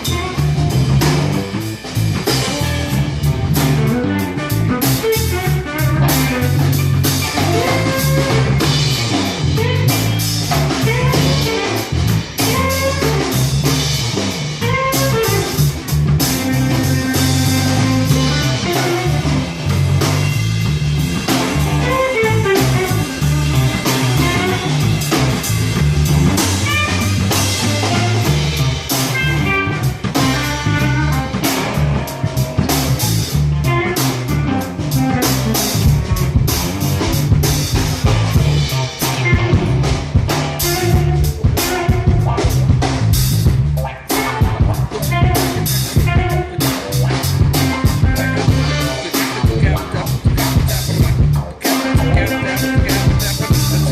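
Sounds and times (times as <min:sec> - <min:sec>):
bass guitar: 0:00.0 - 0:53.9
drum kit: 0:00.0 - 0:53.9
electric guitar lead: 0:00.0 - 0:53.9.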